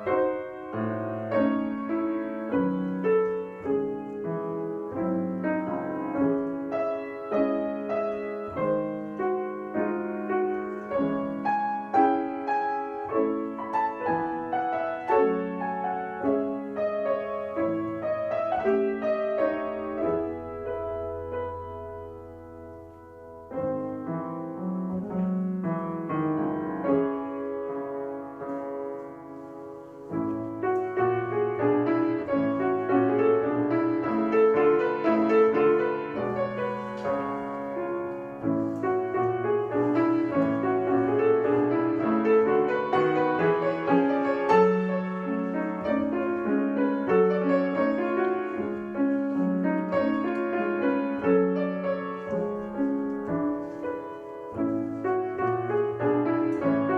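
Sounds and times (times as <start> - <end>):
classical piano piece: 0.0 - 56.9.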